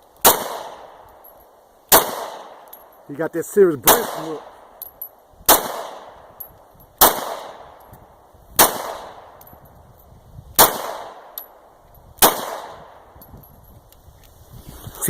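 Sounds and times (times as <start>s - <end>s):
pistol gunshots: 0.2s - 1.0s, 1.9s - 2.7s, 3.8s - 4.7s, 5.5s - 6.3s, 7.0s - 7.8s, 8.6s - 9.4s, 10.6s - 11.6s, 12.2s - 13.0s.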